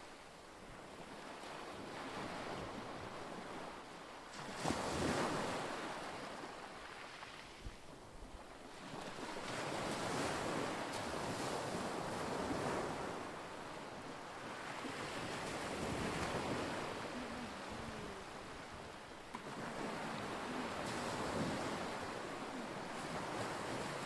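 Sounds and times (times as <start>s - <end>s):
wind on microphone: 7.5s - 24.0s
waves washing against shore: 8.7s - 24.0s.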